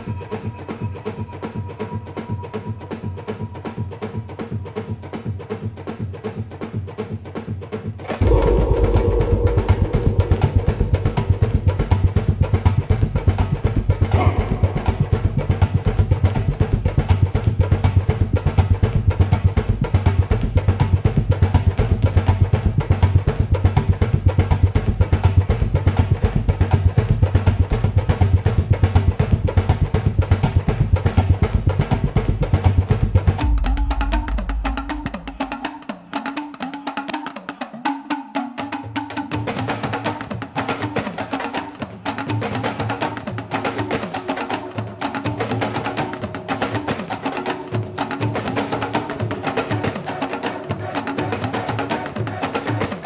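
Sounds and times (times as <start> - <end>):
fast drums over deep bass: 8.2 - 35.6.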